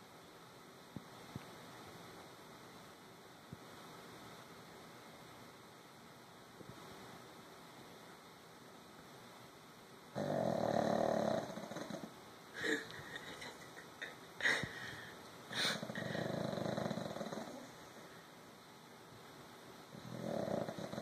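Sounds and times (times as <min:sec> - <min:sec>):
dog snoring: 0:10.1 - 0:12.1, 0:15.6 - 0:18.0, 0:19.9 - 0:21.0
dog snorting breaths: 0:14.4 - 0:17.8.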